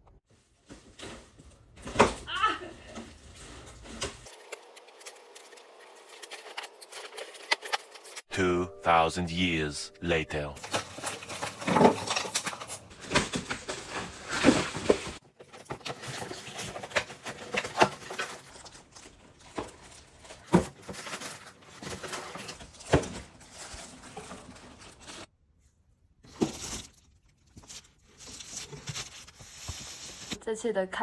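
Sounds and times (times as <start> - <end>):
cardboard rustling: 0.3 - 8.3, 10.6 - 25.3, 26.2 - 30.4
metal parts knocking and scraping: 3.8 - 8.3, 10.6 - 18.8.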